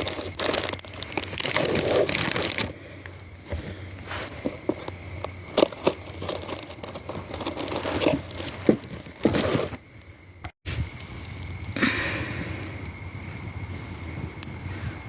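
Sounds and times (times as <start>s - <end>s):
packaging crinkling and tearing: 0.0s - 9.8s.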